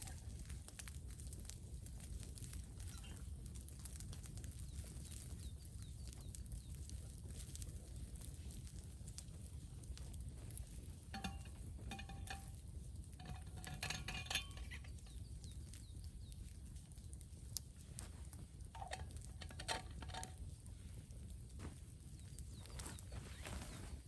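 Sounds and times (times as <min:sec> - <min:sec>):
metal utensils clinking on cookware: 0:11.1 - 0:12.6, 0:13.2 - 0:15.2, 0:18.8 - 0:20.4.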